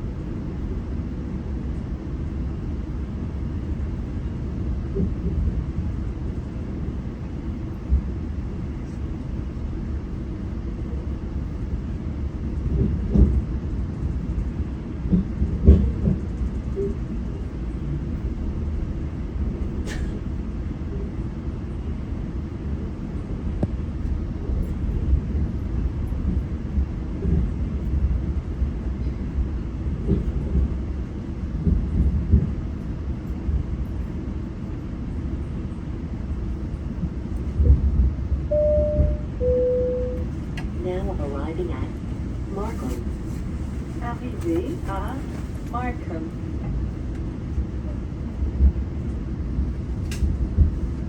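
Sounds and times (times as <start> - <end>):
train rumbling along track: 0.0 - 51.0
train knocks: 12.8 - 13.4, 15.0 - 16.3, 37.6 - 41.8
chime tone: 38.5 - 40.2.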